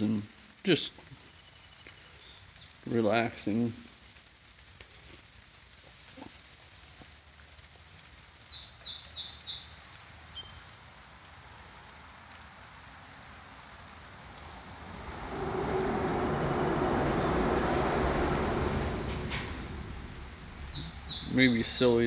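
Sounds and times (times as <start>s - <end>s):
light rain hiss: 0.0s - 22.0s
songbird singing: 1.2s - 2.8s, 8.5s - 10.9s, 14.4s - 22.0s.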